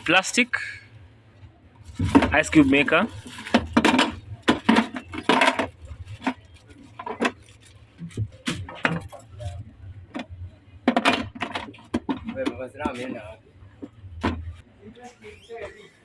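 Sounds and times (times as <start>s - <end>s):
plastic clicks and clattering knocks: 3.4s - 13.1s.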